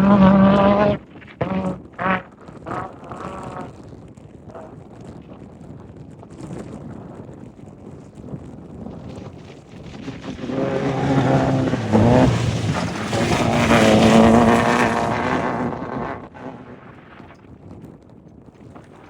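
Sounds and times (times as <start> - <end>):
race vehicle engine passing: 0.0 - 3.7, 9.9 - 17.3
wind buffeting microphone: 0.0 - 19.0.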